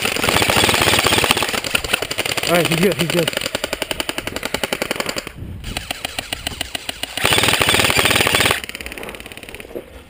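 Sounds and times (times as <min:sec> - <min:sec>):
loud close gun burst: 0:00.0 - 0:09.5
airsoft guns firing full-auto: 0:00.0 - 0:09.6.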